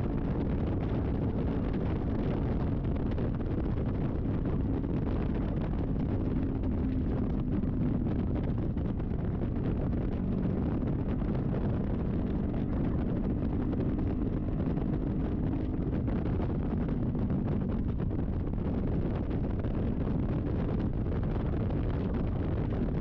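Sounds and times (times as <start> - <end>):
motorcycle engine cruising: 0.0 - 23.0
road noise: 0.0 - 23.0
wind buffeting the microphone: 0.0 - 23.0.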